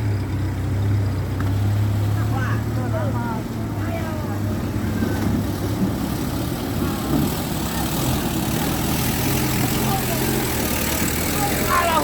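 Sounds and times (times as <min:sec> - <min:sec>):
vehicle engine droning: 0:00.0 - 0:12.0
faint voices: 0:06.8 - 0:12.0.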